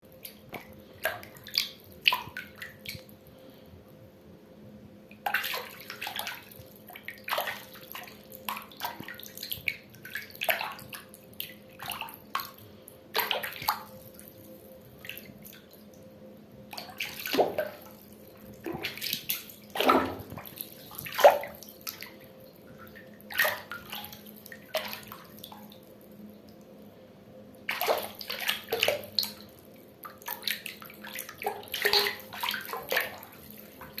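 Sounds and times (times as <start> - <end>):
faint steady hum: 0.0 - 34.0
water splashing and pouring: 5.3 - 12.5, 13.2 - 14.4, 16.8 - 22.2, 22.8 - 25.8, 27.7 - 34.0.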